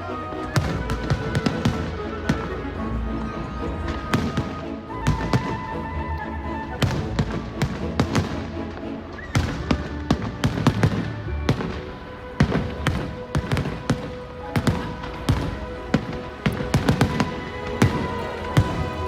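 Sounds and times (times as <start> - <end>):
music playing: 0.0 - 19.0
fireworks banging: 6.8 - 19.0.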